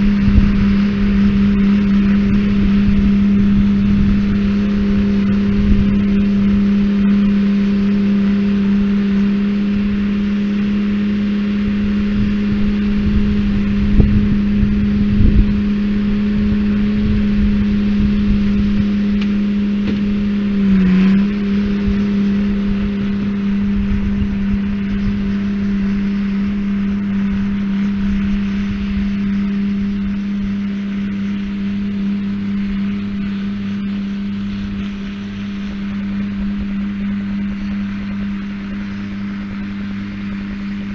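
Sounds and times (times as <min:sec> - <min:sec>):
low rumble: 0:00.0 - 0:40.9.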